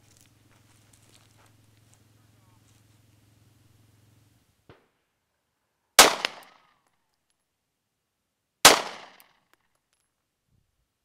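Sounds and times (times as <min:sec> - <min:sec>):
pistol shots: 0:06.0 - 0:06.7, 0:08.6 - 0:09.3
sharp crack: 0:06.0 - 0:06.8, 0:08.6 - 0:09.6.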